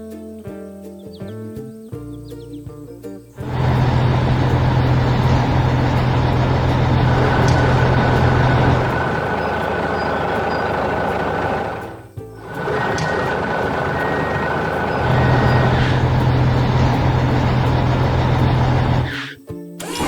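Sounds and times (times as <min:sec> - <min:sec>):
music: 0:00.0 - 0:06.3, 0:11.8 - 0:20.0
construction vehicle engine rumble: 0:03.4 - 0:19.2, 0:19.8 - 0:20.0.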